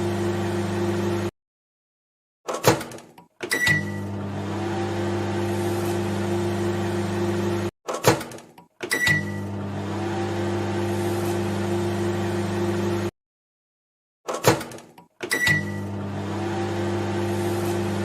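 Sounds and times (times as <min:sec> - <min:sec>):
microwave oven humming: 0:00.0 - 0:01.3, 0:03.6 - 0:07.7, 0:09.0 - 0:13.1, 0:15.3 - 0:18.0.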